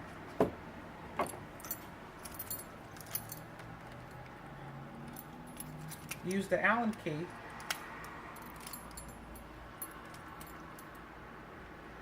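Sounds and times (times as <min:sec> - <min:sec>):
metal tools clinking: 0:01.2 - 0:04.2, 0:05.0 - 0:07.8, 0:08.4 - 0:10.9.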